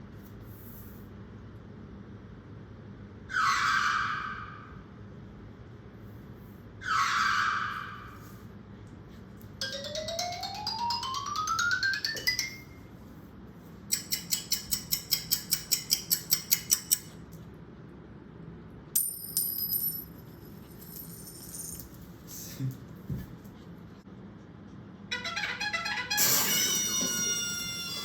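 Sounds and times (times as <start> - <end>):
bright ringing ding: 26.2 - 28.0.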